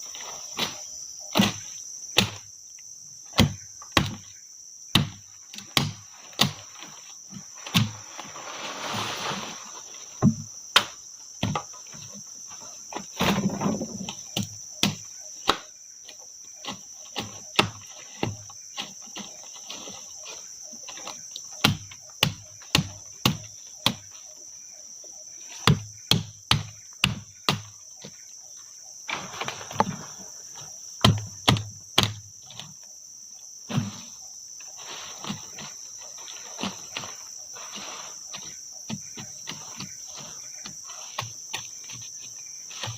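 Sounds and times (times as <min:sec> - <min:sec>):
high-pitched insect chorus: 0:00.0 - 0:42.9
short rustles: 0:08.0 - 0:10.1.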